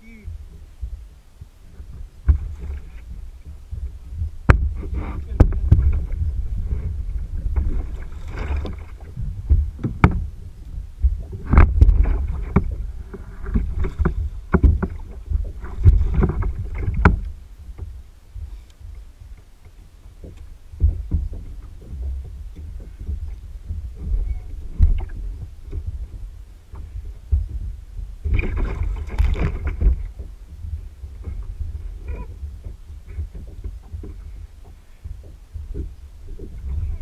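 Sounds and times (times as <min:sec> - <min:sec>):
low rumble on microphone: 0:00.0 - 0:37.0
water splashing: 0:00.0 - 0:37.0
knocks against kayak hull: 0:02.2 - 0:06.9, 0:07.5 - 0:10.4, 0:11.0 - 0:18.0, 0:20.2 - 0:31.4.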